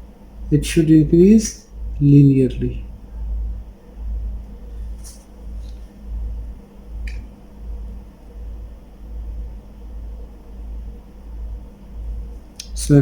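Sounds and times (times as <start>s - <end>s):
faint steady hum: 0.0s - 13.0s
low rumble on microphone: 0.0s - 13.0s
faint click: 7.0s - 7.3s, 12.6s - 12.8s.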